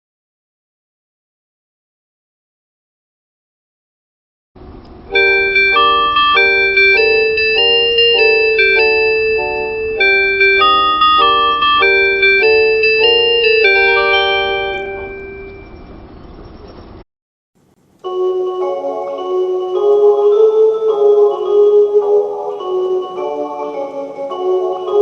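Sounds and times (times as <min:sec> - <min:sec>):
electronic chime melody: 0:05.1 - 0:15.9.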